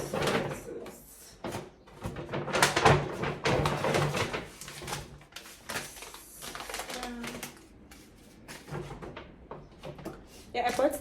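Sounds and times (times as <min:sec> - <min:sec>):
rustling packaging: 0:00.0 - 0:11.0.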